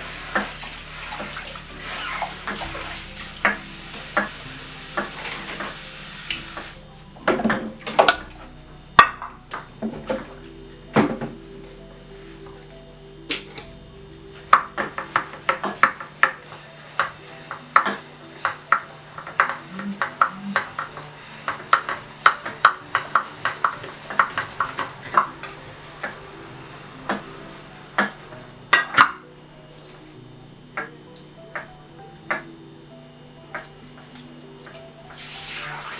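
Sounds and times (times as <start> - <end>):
pots and pans clinking: 0.0 - 11.4, 14.3 - 29.2
droning music: 0.0 - 35.9.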